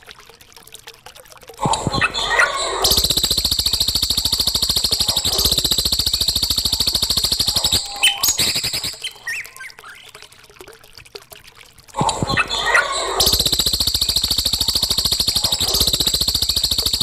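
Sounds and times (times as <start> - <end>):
bird chirps: 2.8 - 10.1, 13.2 - 17.0.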